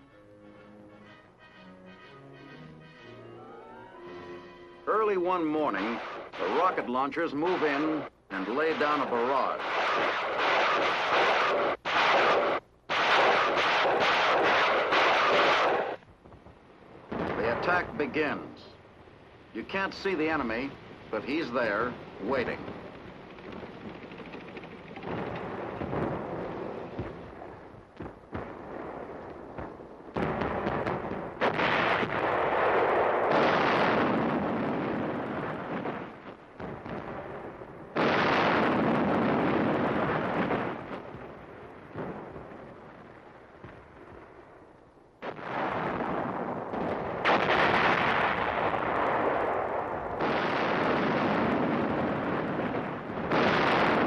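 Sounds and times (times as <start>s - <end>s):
artillery blasts rumbling: 4.9s - 18.7s, 19.5s - 54.0s
gunfire: 5.3s - 16.0s, 23.3s - 42.6s, 45.2s - 54.0s.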